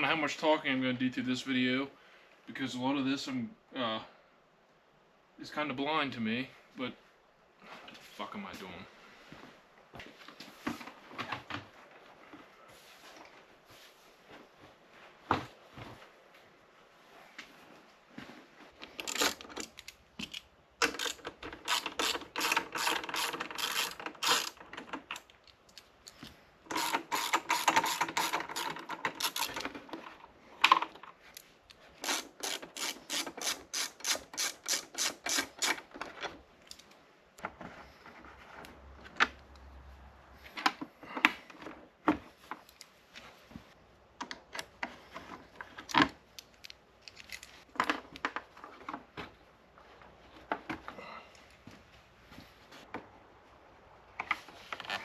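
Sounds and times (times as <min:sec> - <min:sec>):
ratchet wrench clicking: 0:20.3 - 0:24.6, 0:26.7 - 0:29.6, 0:32.0 - 0:35.8.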